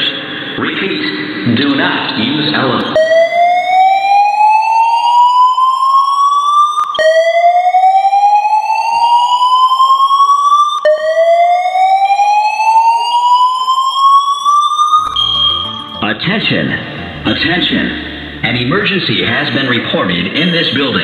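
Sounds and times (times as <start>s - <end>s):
fire alarm whoop tone: 2.9s - 18.9s.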